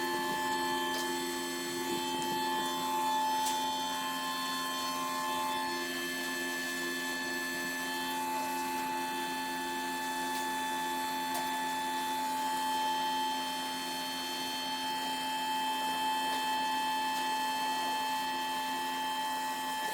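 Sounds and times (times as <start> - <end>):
cold press machine humming: 0.0 - 9.3.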